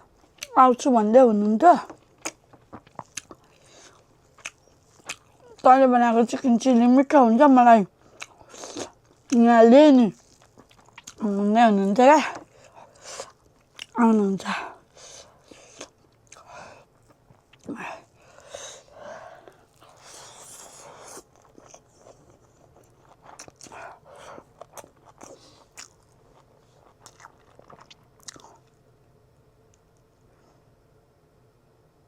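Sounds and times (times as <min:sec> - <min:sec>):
chewing and biting: 0:01.8 - 0:05.7, 0:10.1 - 0:11.3, 0:12.2 - 0:14.0, 0:19.4 - 0:28.8.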